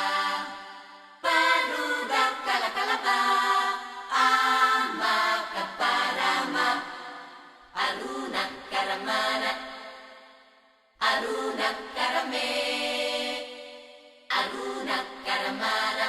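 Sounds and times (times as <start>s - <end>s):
voices chanting long notes: 0.0s - 10.3s.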